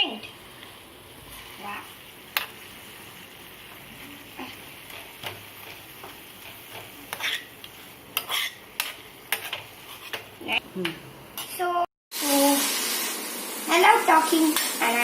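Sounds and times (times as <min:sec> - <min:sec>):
leaves sizzling in oil: 0:00.0 - 0:15.0
spoon scraping and clinking pan: 0:08.2 - 0:10.3.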